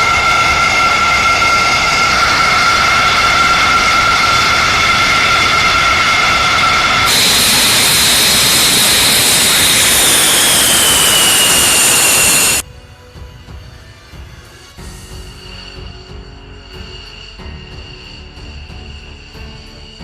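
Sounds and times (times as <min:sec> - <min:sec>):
jet engines whining: 0:00.0 - 0:12.6.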